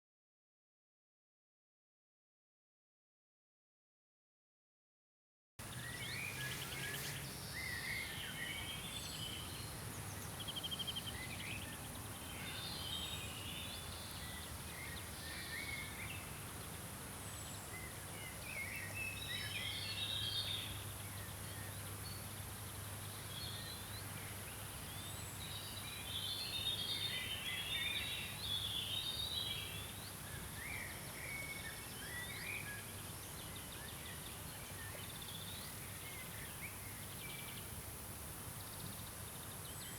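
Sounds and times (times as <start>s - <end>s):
steady high hiss: 5.6s - 10.4s
songbirds singing and chirping: 5.6s - 39.9s.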